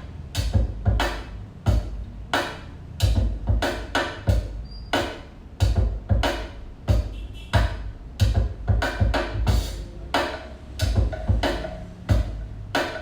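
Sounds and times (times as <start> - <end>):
deep drum hits: 10.8 - 12.4.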